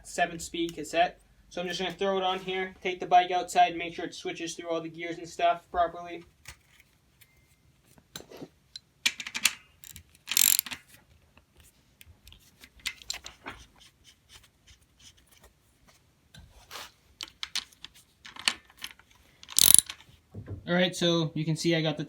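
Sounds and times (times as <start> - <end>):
metal clicks and rattles: 9.1 - 10.9, 17.2 - 20.1
bicycle freewheel ratcheting: 9.8 - 10.7, 19.5 - 19.9.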